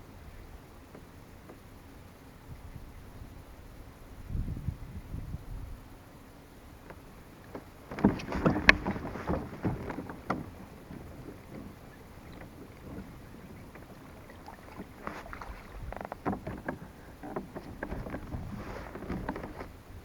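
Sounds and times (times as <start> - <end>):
wind buffeting microphone: 2.4 - 5.9, 7.0 - 20.0
knocks and clatter: 7.5 - 19.7.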